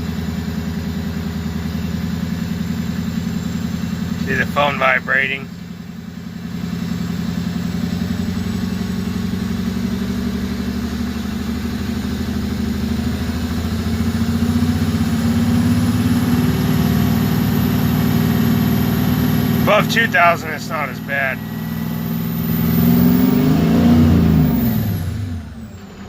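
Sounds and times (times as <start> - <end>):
truck engine revving roughly: 4.0 - 5.5, 12.3 - 26.0.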